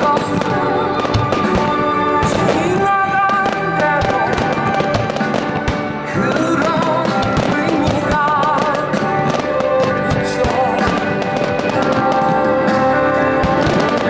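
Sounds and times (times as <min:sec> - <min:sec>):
fireworks banging and crackling: 0:00.0 - 0:14.0
loud music: 0:00.0 - 0:14.0.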